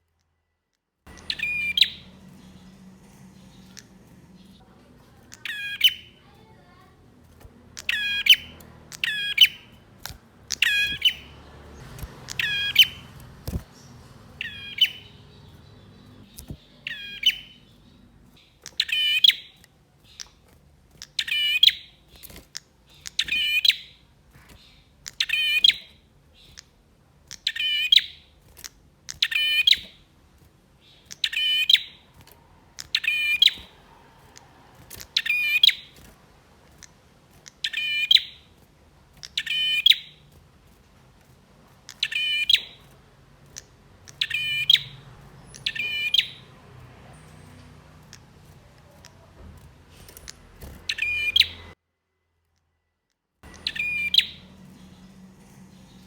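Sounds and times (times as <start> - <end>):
bird chirping: 1.1 - 51.8, 52.8 - 56.0.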